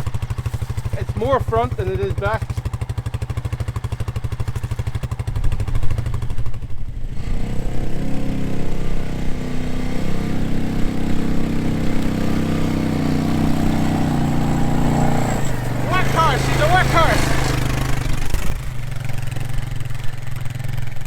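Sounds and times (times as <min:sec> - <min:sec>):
quad bike engine revving: 0:00.0 - 0:21.0.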